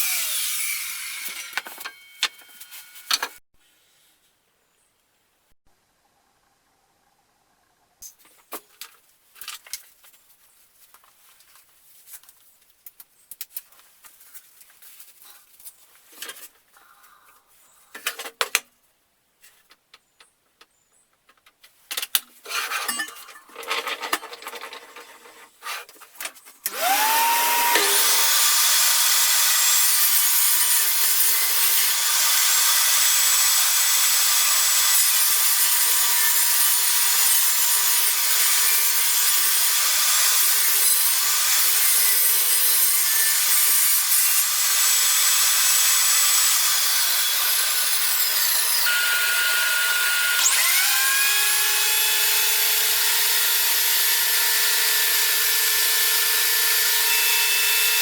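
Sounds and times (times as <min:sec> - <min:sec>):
power tool whining on wood: 0:00.0 - 0:03.4, 0:26.7 - 0:58.0.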